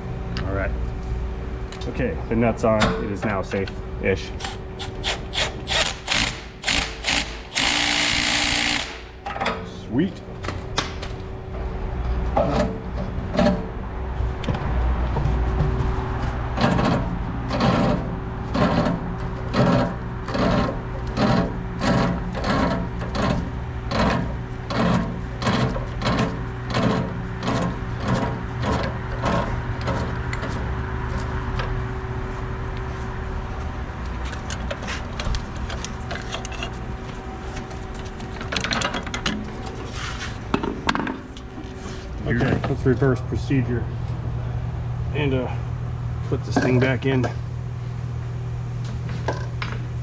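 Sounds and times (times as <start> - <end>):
steady hum: 0.0 - 50.0
rhythmic mechanical strokes: 4.4 - 9.1.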